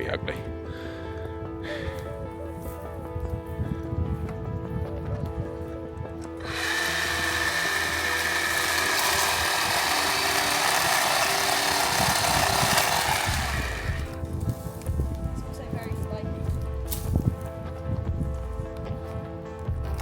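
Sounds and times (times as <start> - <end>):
background music: 0.0 - 20.0
chainsaw running: 6.4 - 14.2.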